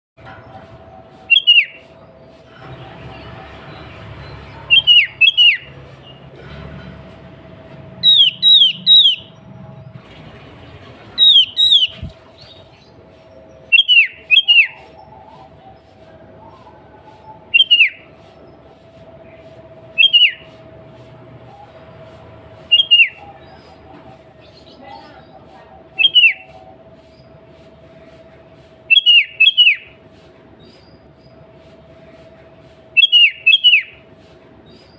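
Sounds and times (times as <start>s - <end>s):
bird whistled calls: 1.2s - 2.0s, 4.5s - 5.8s, 8.0s - 9.4s, 11.2s - 18.3s, 19.9s - 20.6s, 22.6s - 23.9s, 25.9s - 27.3s, 28.9s - 30.0s, 32.9s - 34.0s.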